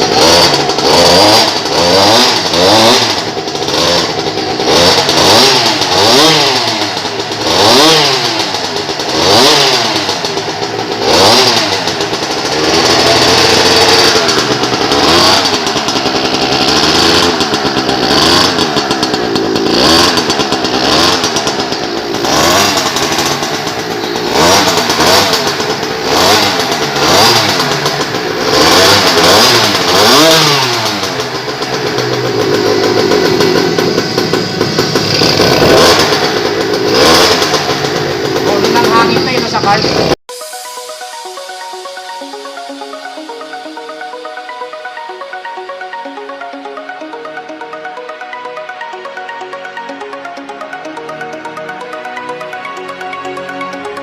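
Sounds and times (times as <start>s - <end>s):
two-stroke scooter engine revving: 0.0s - 54.0s.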